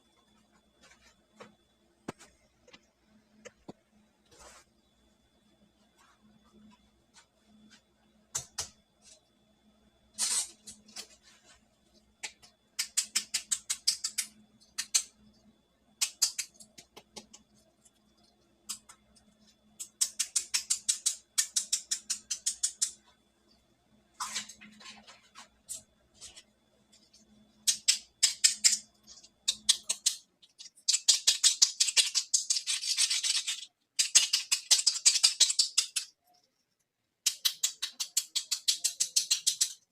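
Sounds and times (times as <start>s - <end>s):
plastic toy pieces clicking: 19.8s - 23.0s, 27.7s - 36.2s, 37.2s - 39.9s.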